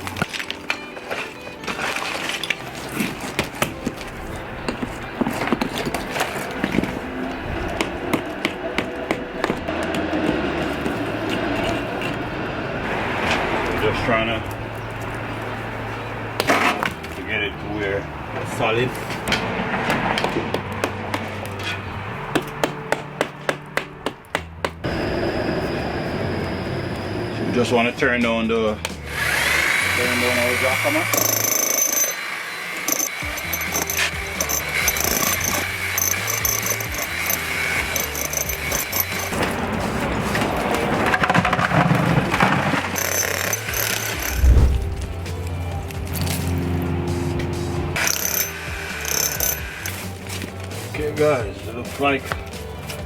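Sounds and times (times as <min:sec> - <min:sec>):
power tool whir with high whine: 0:29.1 - 0:39.4, 0:43.0 - 0:44.4, 0:48.0 - 0:50.0
brick and mortar knocking and clattering: 0:40.4 - 0:44.3.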